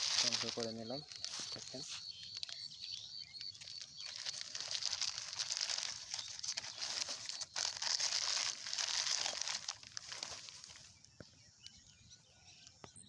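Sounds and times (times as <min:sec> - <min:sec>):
plastic crinkling and rustling: 0:00.0 - 0:11.2.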